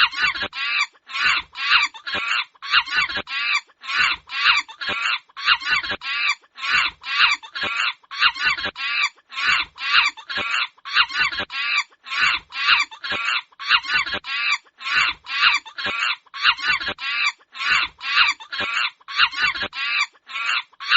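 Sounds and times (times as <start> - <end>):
monkeys screaming: 0.0 - 20.9.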